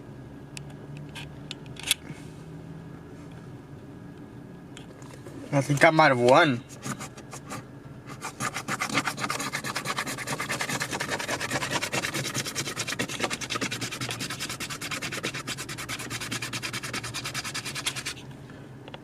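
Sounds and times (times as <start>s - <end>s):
coin scratching lottery ticket: 6.8s - 18.2s.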